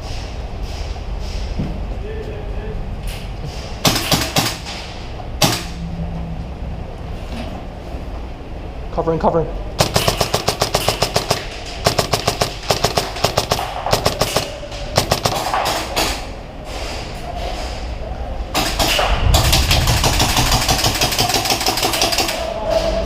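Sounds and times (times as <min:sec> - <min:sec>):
continuous rushing noise: 0:00.0 - 0:23.0
airsoft gun full-auto firing: 0:09.8 - 0:15.8, 0:18.6 - 0:22.4.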